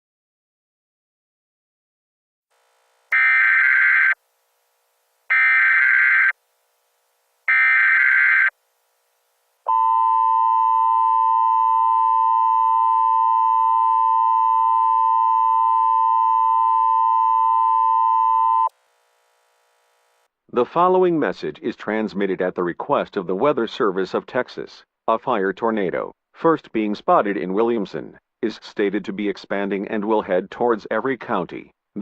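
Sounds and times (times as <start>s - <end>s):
screeching digital data bursts: 3.1s - 4.2s, 5.3s - 6.4s, 7.5s - 8.5s
two-tone alert signal: 9.7s - 18.7s.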